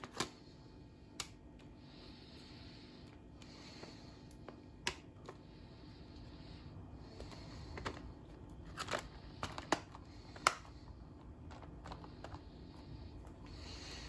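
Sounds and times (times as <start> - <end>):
packaging clicks and rustles: 7.0 - 14.0.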